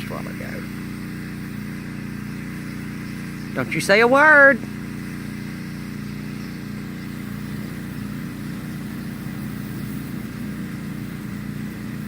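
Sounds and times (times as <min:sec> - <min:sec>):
pressure washer engine running: 0:00.0 - 0:12.0.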